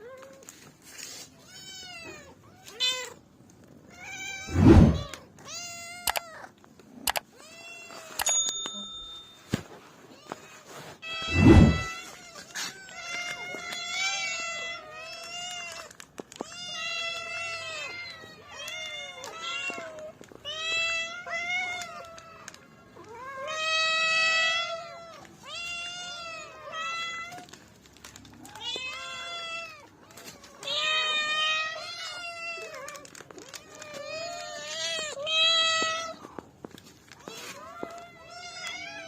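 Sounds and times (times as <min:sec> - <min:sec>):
cat meowing: 0:11.0 - 0:15.8, 0:37.2 - 0:39.0.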